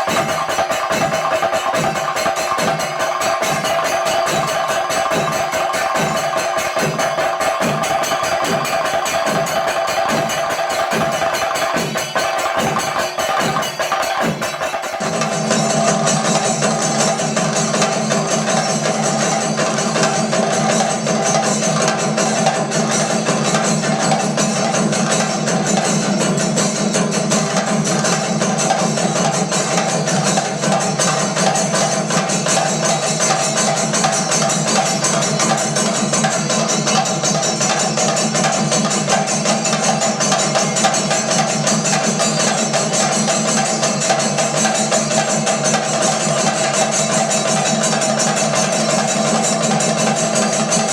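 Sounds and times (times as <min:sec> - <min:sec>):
sticks striking drums rapidly: 0:00.0 - 0:18.6
drums beaten fast with sticks: 0:00.0 - 0:50.9
hand cymbals keeping time: 0:00.0 - 0:50.9
steady drum beat: 0:00.0 - 0:50.9.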